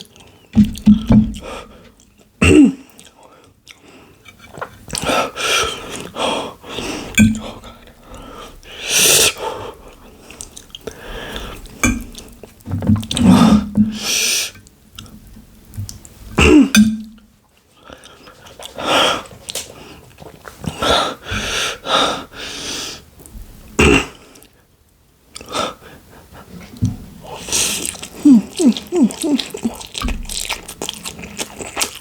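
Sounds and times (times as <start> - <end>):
chewing: 0.0 - 6.2, 7.0 - 14.1, 17.4 - 20.9, 26.2 - 32.0
person groaning: 28.2 - 29.7.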